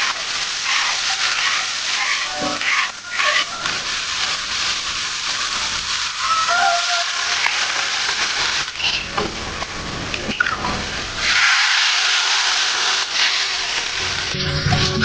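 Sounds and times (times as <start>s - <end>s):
steady hissing noise: 0.0s - 15.0s
high squeak: 2.0s - 3.9s, 6.1s - 7.7s.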